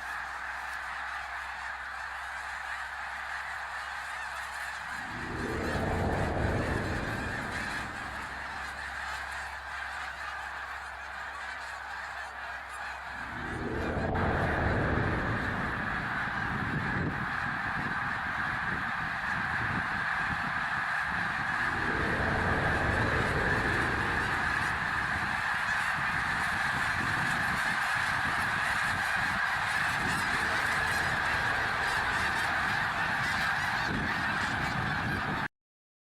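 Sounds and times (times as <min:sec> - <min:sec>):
eerie horn-like drone: 0:04.7 - 0:09.8, 0:12.9 - 0:33.9
deep rumbling swells: 0:04.8 - 0:09.2, 0:13.0 - 0:33.8.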